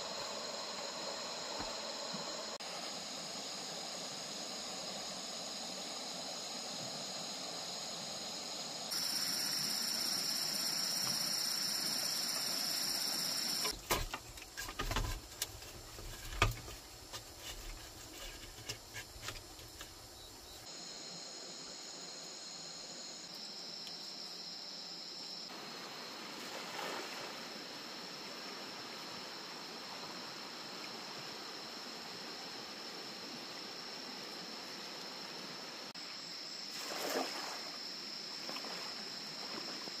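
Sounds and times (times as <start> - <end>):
crickets chirring: 0.0 - 40.0
irregular knocks and thuds: 13.7 - 20.0.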